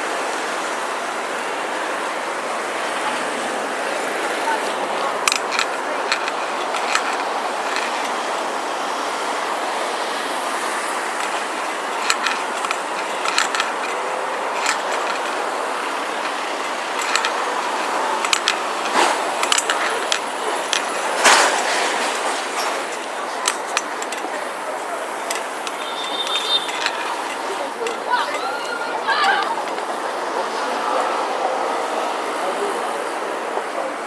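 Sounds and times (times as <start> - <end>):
city street traffic noise: 0.0 - 34.0
short clicks and knocks: 5.2 - 8.5, 11.0 - 24.4, 25.2 - 28.5.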